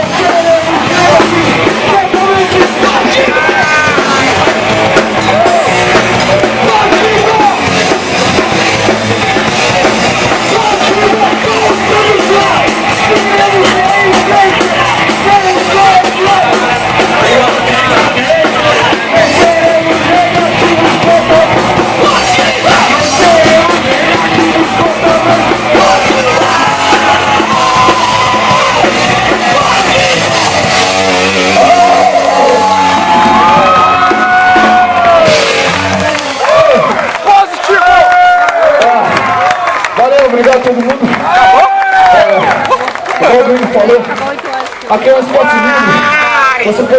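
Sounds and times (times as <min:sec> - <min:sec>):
person shouting singing: 0:00.0 - 0:09.5, 0:10.2 - 0:36.9
punk band playing live: 0:00.0 - 0:46.9.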